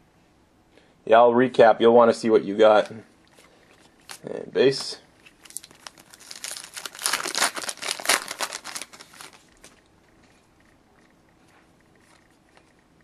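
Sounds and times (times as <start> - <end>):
foil wrapper tearing and crinkling: 5.4 - 9.7.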